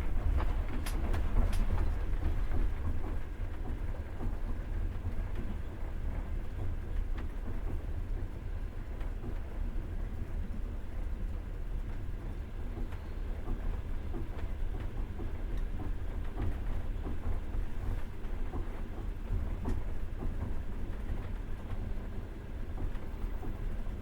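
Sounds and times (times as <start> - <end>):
train wheels clicking and knocking: 0.0 - 5.6
train rumbling inside carriage: 0.0 - 24.0.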